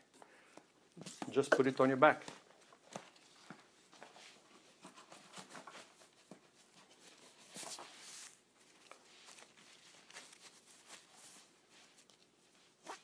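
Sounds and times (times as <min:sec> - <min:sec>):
backpack fabric rustling: 0:07.7 - 0:13.0
fabric swish: 0:12.8 - 0:13.0.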